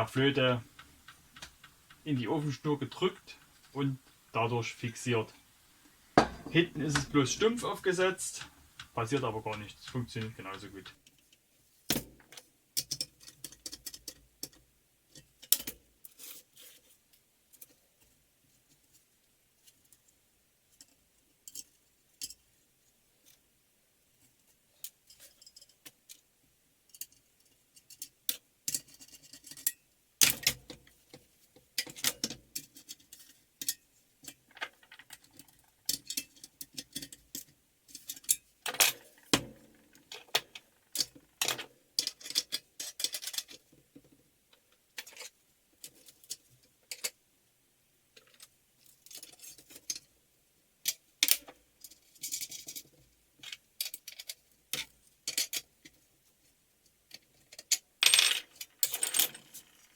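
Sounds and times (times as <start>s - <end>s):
metal clattering: 6.2s - 10.9s
metal tools clinking: 6.2s - 10.9s, 58.0s - 59.9s.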